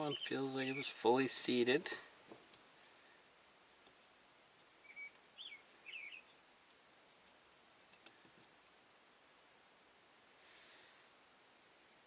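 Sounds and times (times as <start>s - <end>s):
faint bird chirps: 0.0s - 1.0s, 4.8s - 6.5s.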